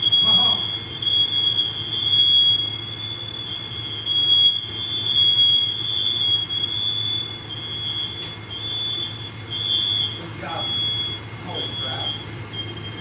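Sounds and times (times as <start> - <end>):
smoke alarm beeping: 0.0 - 13.0.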